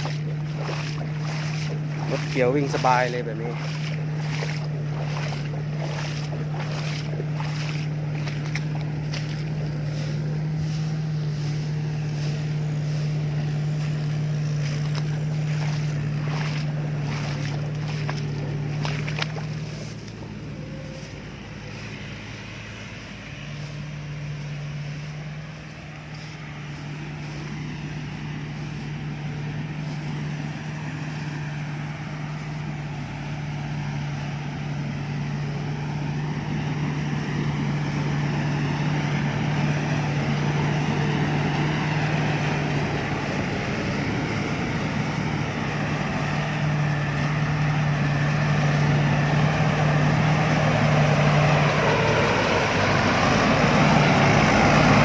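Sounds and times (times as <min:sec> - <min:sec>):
combine harvester engine humming: 0:00.0 - 0:55.0.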